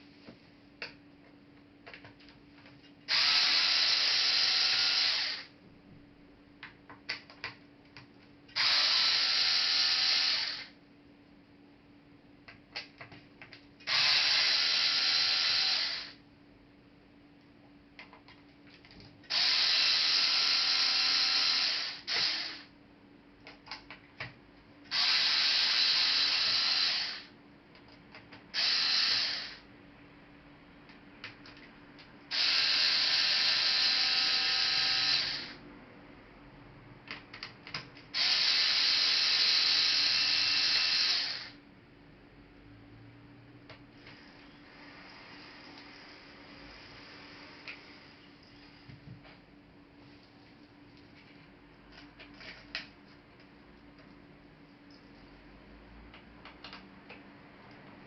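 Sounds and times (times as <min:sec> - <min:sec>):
electric screwdriver running: 0:03.1 - 0:05.5, 0:08.6 - 0:10.7, 0:13.9 - 0:16.2, 0:19.3 - 0:22.7, 0:24.9 - 0:27.3, 0:28.6 - 0:29.6, 0:32.3 - 0:35.6, 0:38.2 - 0:41.6.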